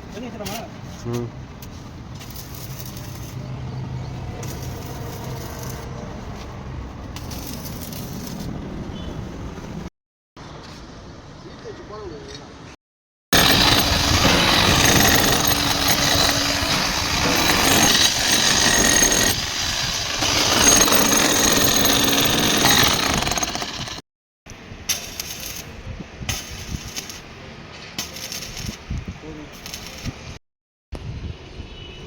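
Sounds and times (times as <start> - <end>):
harsh metalworking noise: 2.2 - 3.4, 4.4 - 5.9, 7.2 - 8.5, 13.3 - 24.0, 24.9 - 27.3, 28.0 - 28.8, 29.5 - 30.3
scattered clicks and knocks: 13.4 - 19.4, 20.2 - 24.0.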